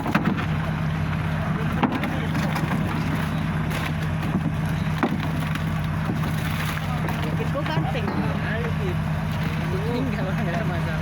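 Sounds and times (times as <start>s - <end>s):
boat engine humming: 0.0s - 11.0s
sharp knocks: 4.3s - 5.4s.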